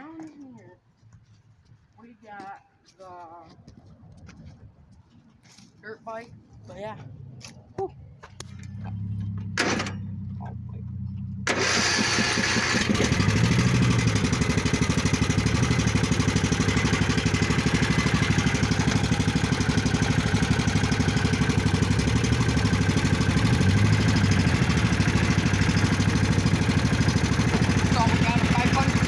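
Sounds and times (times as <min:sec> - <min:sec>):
dirt bike engine running: 0:08.4 - 0:29.0.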